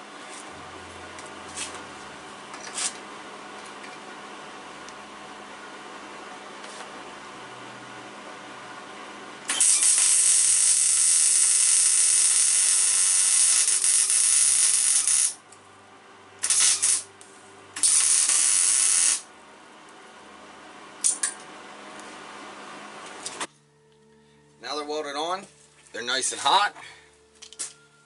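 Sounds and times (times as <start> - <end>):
arc welding crackle: 9.4 - 15.6, 16.4 - 19.3.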